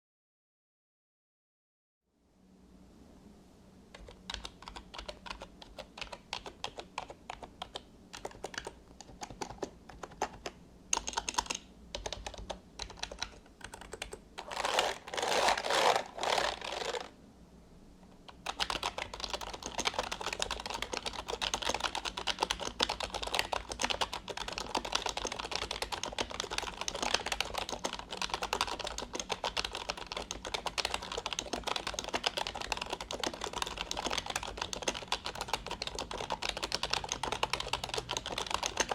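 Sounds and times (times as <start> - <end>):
membrane keyboard typing: 3.9 - 17.1, 18.3 - 38.9.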